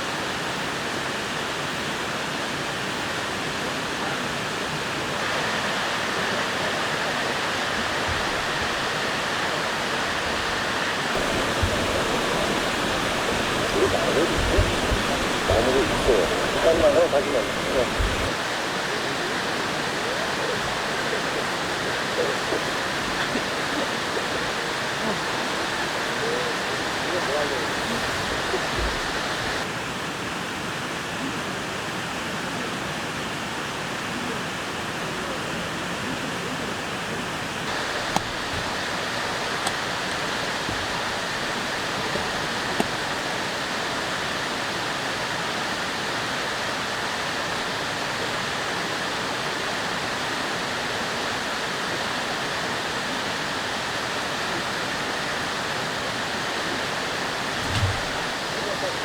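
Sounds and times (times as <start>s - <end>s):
stream rushing: 0.0s - 30.5s, 37.6s - 59.0s
faint clicks: 11.1s - 18.4s.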